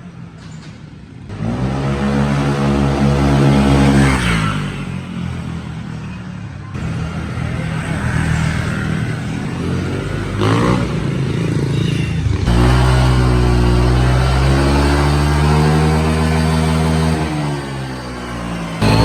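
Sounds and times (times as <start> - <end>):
motorbike engine revving: 1.3 - 5.0, 8.9 - 19.0.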